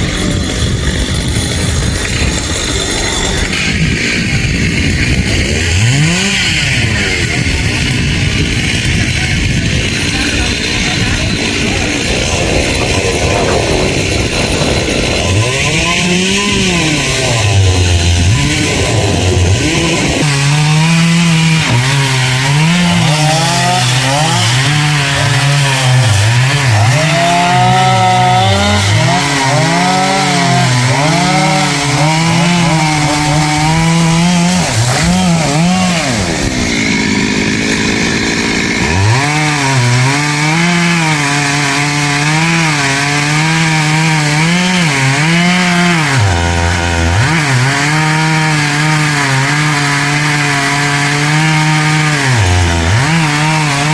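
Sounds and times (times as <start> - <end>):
chainsaw cutting wood: 0.0 - 53.9.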